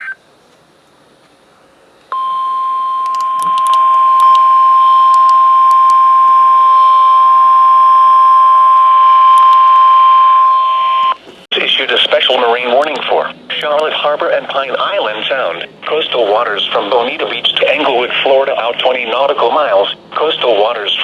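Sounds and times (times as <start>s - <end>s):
steady warning alarm tone: 2.1s - 11.2s.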